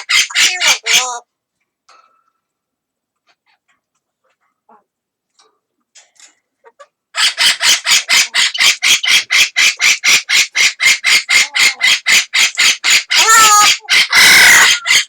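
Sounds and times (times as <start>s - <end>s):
parrot squawking: 0.0s - 1.2s, 7.2s - 15.0s.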